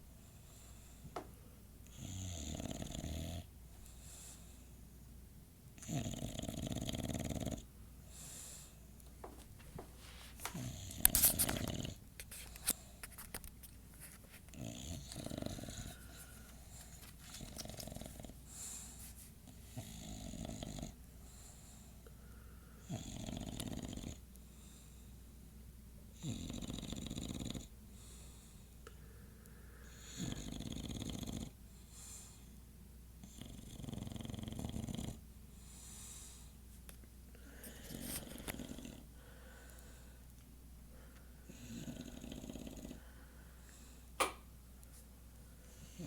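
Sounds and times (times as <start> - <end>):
dog snoring: 1.9 - 3.5, 5.8 - 8.4, 10.5 - 12.0, 14.5 - 16.3, 17.3 - 18.7, 19.6 - 21.0, 22.8 - 24.3, 26.2 - 27.7, 29.8 - 31.6, 33.2 - 35.2, 37.5 - 39.1, 41.4 - 43.1, 45.8 - 46.0.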